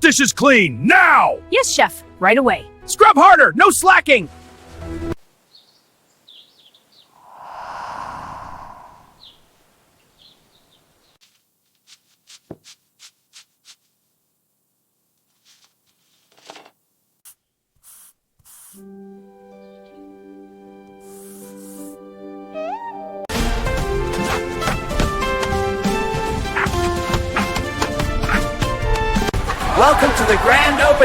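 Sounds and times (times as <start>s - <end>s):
music: 0.0s - 5.2s, 18.8s - 31.0s
soft rushing noise: 7.2s - 9.8s.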